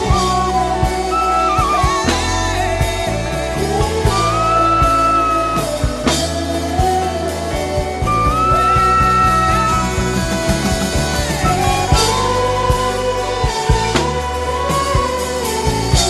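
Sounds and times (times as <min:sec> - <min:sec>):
bass guitar: 0:00.0 - 0:16.0
drum kit: 0:00.0 - 0:16.0
hummed gospel melody: 0:00.0 - 0:16.0.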